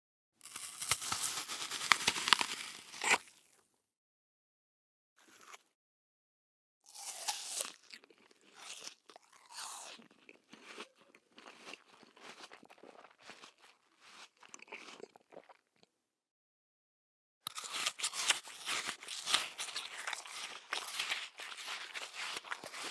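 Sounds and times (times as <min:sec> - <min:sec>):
crunchy food chewing: 0:00.4 - 0:03.5, 0:05.2 - 0:05.7, 0:06.9 - 0:15.9, 0:17.5 - 0:22.9.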